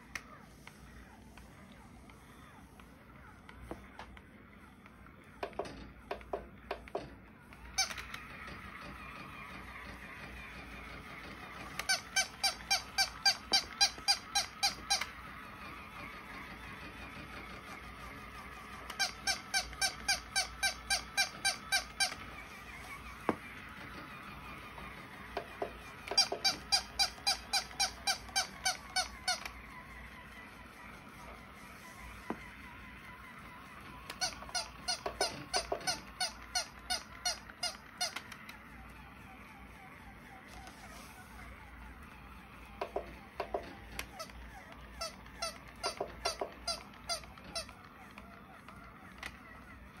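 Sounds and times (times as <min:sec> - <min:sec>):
toy dog squeaky yips: 0:07.7 - 0:08.3, 0:11.4 - 0:15.2, 0:18.8 - 0:22.2, 0:25.8 - 0:29.6, 0:34.0 - 0:38.7, 0:42.8 - 0:50.0.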